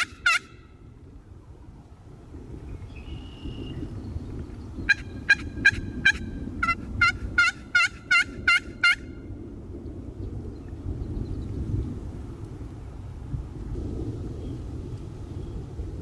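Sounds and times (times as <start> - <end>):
turkey yelps: 0.0 - 0.6, 4.9 - 9.1
steady low rumble: 0.0 - 16.0.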